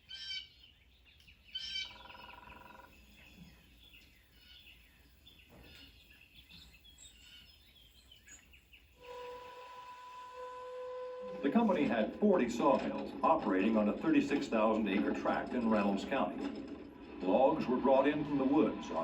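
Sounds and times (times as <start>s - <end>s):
faint birds chirping: 0.0s - 10.6s.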